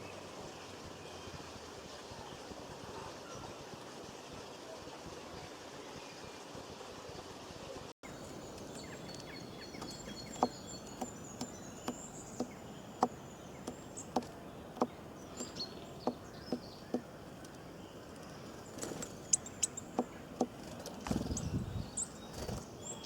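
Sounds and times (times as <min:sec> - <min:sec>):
high thin bird chirps: 0:08.1 - 0:23.0.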